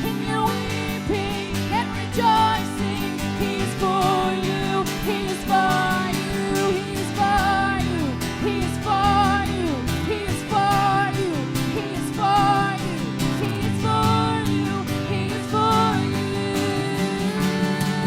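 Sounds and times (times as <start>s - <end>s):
guitars holding chords: 0.0s - 18.0s.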